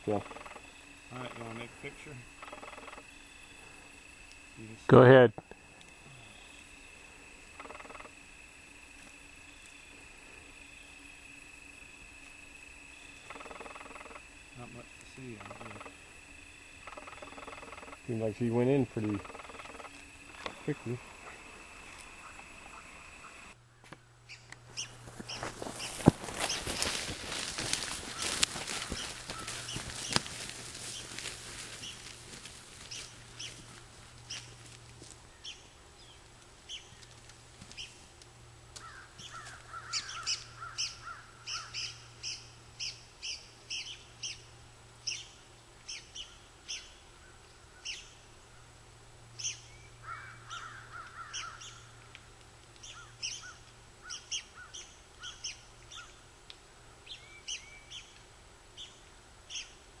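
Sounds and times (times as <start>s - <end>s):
faint low hum: 0.0s - 60.0s
birds chirping: 12.8s - 27.0s, 28.0s - 32.1s, 38.8s - 47.0s, 49.4s - 51.9s, 52.8s - 56.2s
birds chattering: 12.9s - 27.0s, 27.8s - 32.1s, 38.8s - 44.4s, 49.4s - 51.9s.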